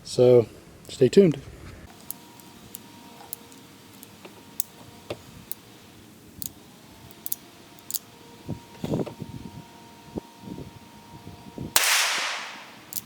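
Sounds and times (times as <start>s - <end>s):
pistol handling clicks: 11.8s - 13.0s.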